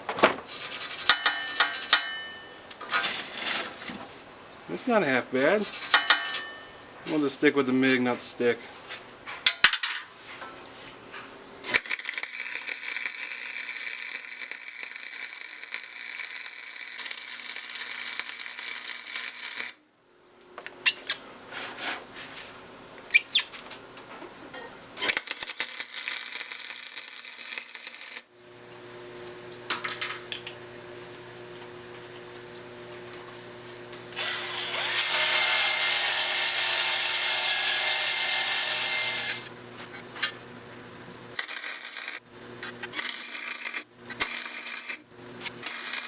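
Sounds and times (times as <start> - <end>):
welder crackling and sizzling: 0.0 - 2.2, 5.3 - 6.6, 11.6 - 19.9, 25.0 - 28.3, 33.7 - 39.5, 41.3 - 46.0.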